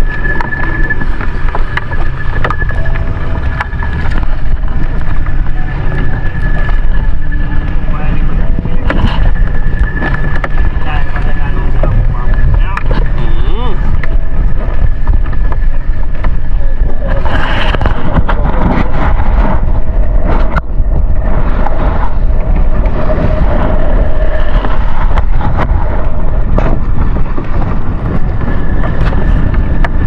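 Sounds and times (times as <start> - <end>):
boat motor running: 0.0 - 30.0
wind rumbling on microphone: 0.0 - 30.0.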